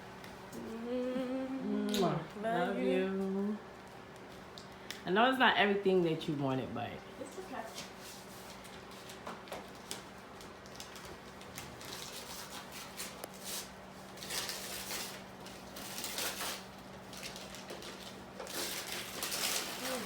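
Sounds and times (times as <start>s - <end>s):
faint steady hum: 0.0s - 20.0s
wrapping paper rustling and tearing: 7.6s - 20.0s.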